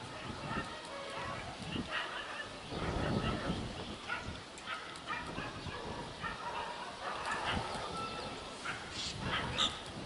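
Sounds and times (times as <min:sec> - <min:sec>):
birds calling harshly: 0:01.9 - 0:09.9.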